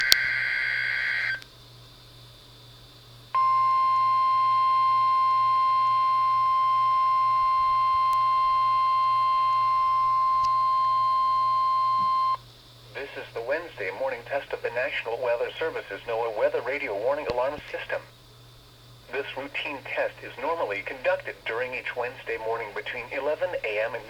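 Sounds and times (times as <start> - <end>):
burst of data tones: 0.0 - 1.4, 3.4 - 12.4
quiet hum: 0.0 - 24.0
steady warning alarm tone: 3.4 - 12.4.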